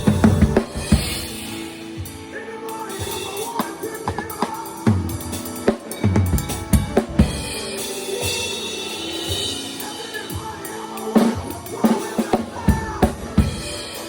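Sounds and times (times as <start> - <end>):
drum kit playing: 0.0 - 14.0.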